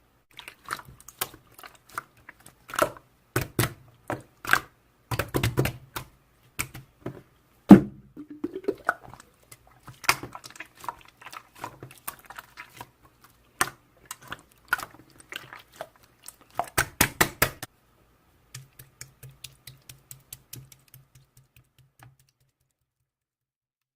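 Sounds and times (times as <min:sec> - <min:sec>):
loud thump: 0:07.7 - 0:08.1.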